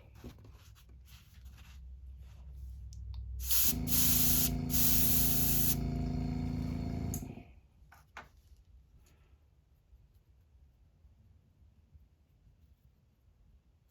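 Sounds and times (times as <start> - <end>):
airbrush spraying hiss: 3.4 - 7.3
compressor humming: 3.4 - 7.6.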